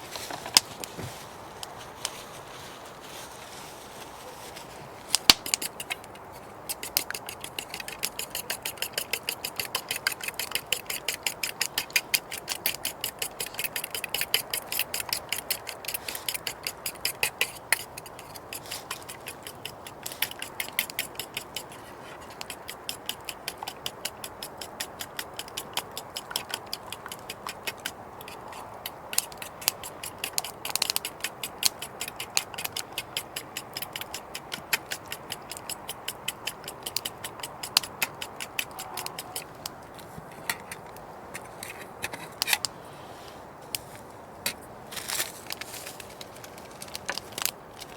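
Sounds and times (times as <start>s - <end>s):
rapid light clicking: 5.1s - 39.8s.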